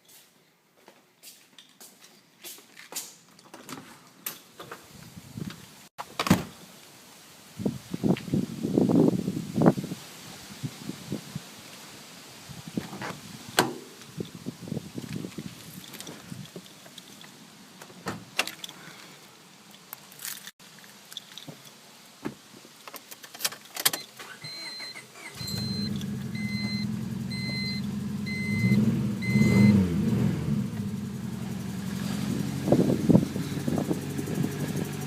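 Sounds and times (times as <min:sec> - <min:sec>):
warning chime beeping: 0:24.5 - 0:29.8
engine revving: 0:25.3 - 0:35.0
car engine idling: 0:25.6 - 0:35.0.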